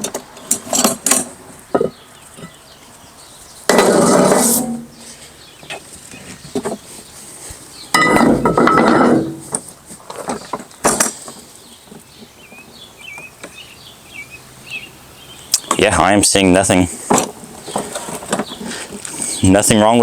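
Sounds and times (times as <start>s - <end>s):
birds chirping faintly: 0.0s - 20.0s.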